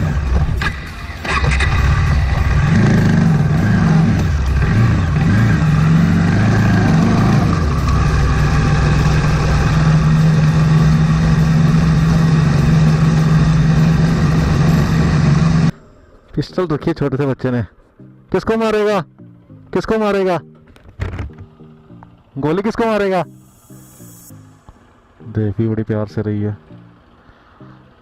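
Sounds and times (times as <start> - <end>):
motorcycle engine running: 0.0 - 15.7.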